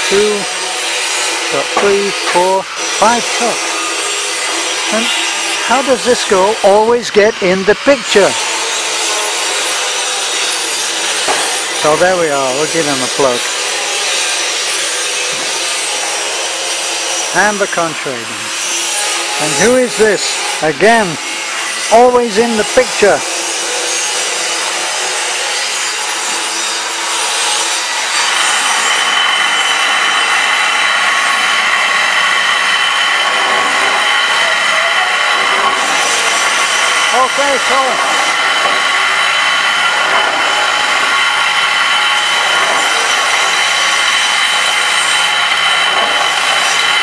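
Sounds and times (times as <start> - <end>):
rasping grinding machine noise: 0.0 - 47.0
high whine: 27.8 - 47.0.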